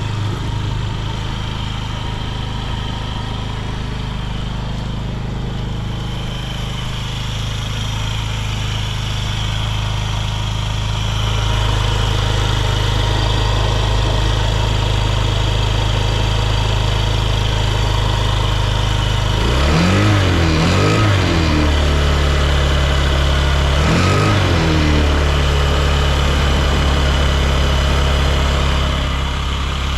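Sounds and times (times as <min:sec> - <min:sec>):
scooter engine idling: 0:00.0 - 0:29.9
scooter engine revving: 0:00.0 - 0:29.9.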